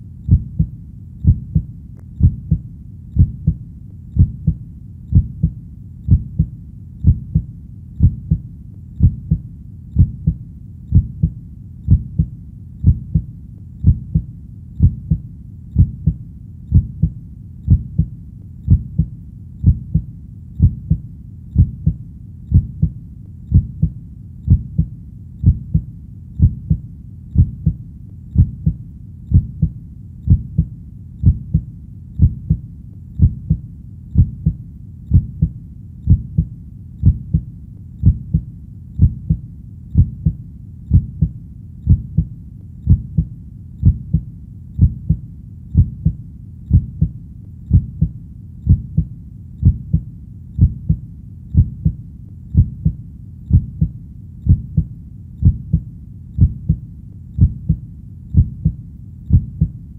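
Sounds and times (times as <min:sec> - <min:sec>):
low steady background noise: 0:00.0 - 0:59.9
heartbeat thumps: 0:00.3 - 0:59.8.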